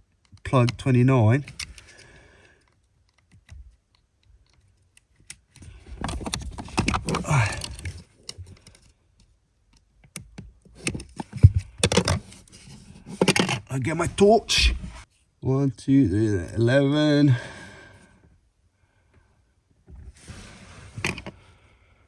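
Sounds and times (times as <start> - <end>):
plastic connector clicking and rattling: 2.6 - 8.7, 9.7 - 12.3.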